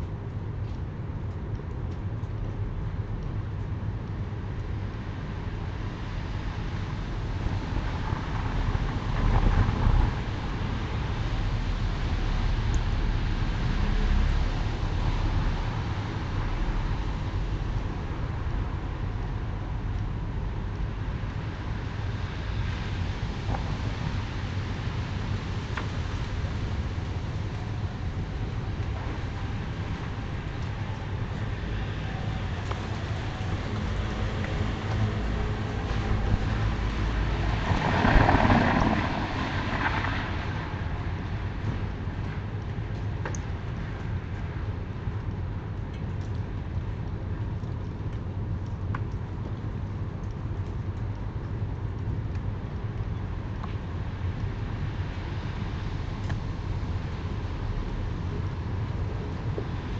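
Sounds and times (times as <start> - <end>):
low outdoor rumble: 0.0 - 59.9
car passing by: 32.9 - 41.5.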